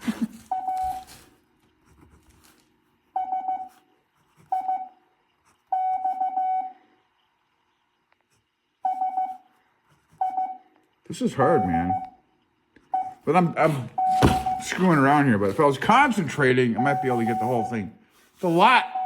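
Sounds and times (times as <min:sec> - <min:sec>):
morse code beeps: 0:00.5 - 0:01.1, 0:03.2 - 0:03.7, 0:04.5 - 0:05.0, 0:05.7 - 0:06.8, 0:08.8 - 0:09.5, 0:10.2 - 0:10.6, 0:11.4 - 0:12.2, 0:12.9 - 0:13.3, 0:13.9 - 0:15.0, 0:16.4 - 0:17.9, 0:18.7 - 0:19.0.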